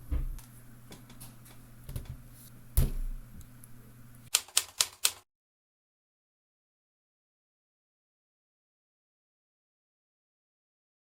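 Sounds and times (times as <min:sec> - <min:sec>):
typewriter key clacks: 0:04.3 - 0:05.2.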